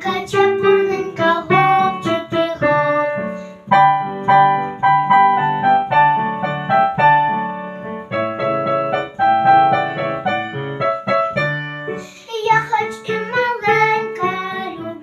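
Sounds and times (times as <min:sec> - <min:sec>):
lively piano accompaniment: 0:00.0 - 0:15.0.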